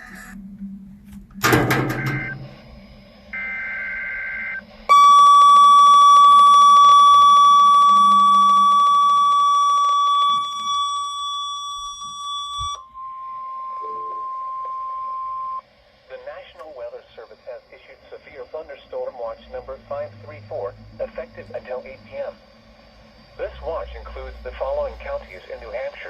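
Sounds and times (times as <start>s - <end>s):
faint steady tone: 0.0s - 26.0s
loud steady warning alarm tone: 0.0s - 26.0s
digital data tones: 1.4s - 15.6s.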